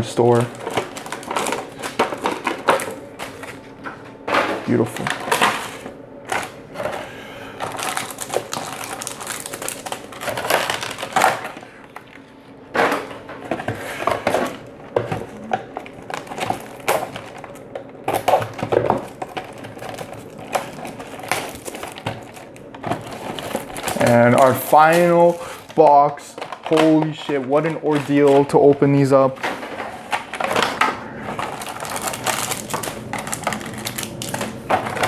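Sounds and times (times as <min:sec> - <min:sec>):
cardboard boxes crunching and rustling: 0:07.7 - 0:11.2, 0:31.4 - 0:35.0.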